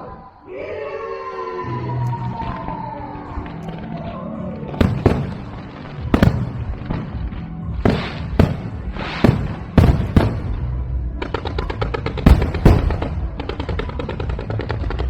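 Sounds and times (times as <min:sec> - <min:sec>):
music: 0:00.0 - 0:15.0
fireworks shells bursting: 0:04.8 - 0:06.9, 0:07.9 - 0:10.8, 0:11.8 - 0:13.4.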